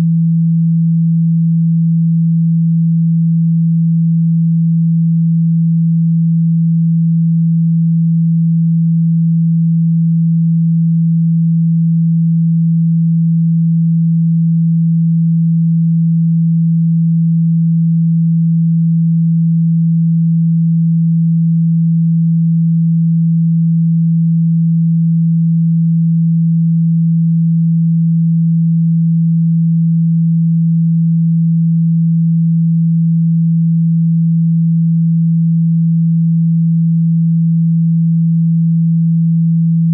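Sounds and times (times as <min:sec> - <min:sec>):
low sine tone: 0:00.0 - 0:39.9.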